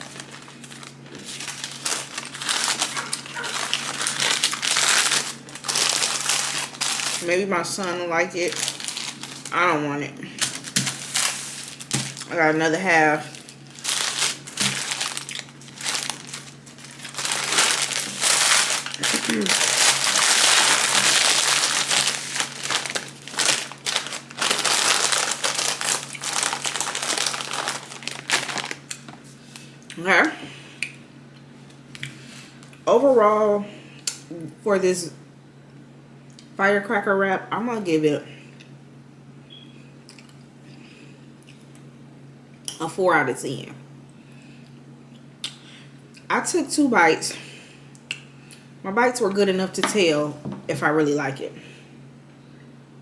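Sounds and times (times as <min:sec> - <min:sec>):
food packaging crinkling: 0:00.0 - 0:09.8, 0:10.4 - 0:29.7.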